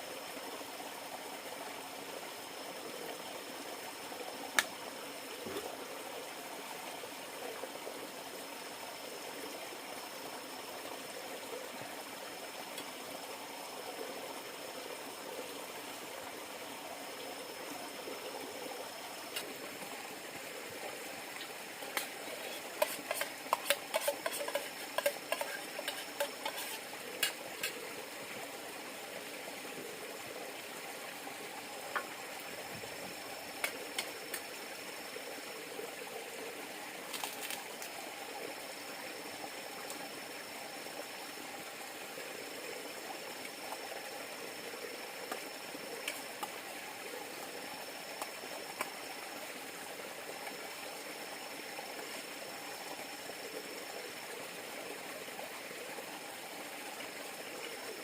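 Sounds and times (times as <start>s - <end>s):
river water running: 0.0s - 58.0s.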